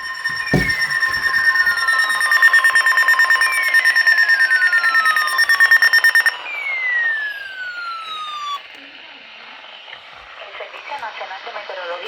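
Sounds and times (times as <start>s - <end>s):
steady electronic alert tones: 0.0s - 6.5s
rapid pulsing beep: 0.0s - 8.7s
falling siren-like sweep: 0.0s - 10.4s.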